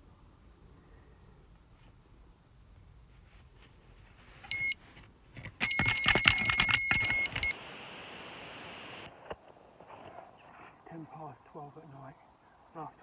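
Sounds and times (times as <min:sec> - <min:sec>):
soft steady hiss: 0:00.0 - 0:05.5, 0:06.6 - 0:13.0
bite alarm beep: 0:04.5 - 0:04.8, 0:05.6 - 0:07.6
bite alarm continuous tone: 0:04.5 - 0:04.8, 0:05.6 - 0:07.6.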